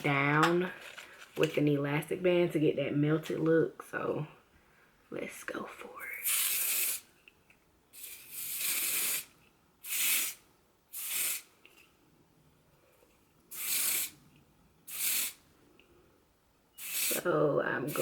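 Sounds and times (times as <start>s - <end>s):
spray can hissing: 6.2s - 7.1s, 8.0s - 11.5s, 13.5s - 14.2s, 14.9s - 15.4s, 16.8s - 18.0s.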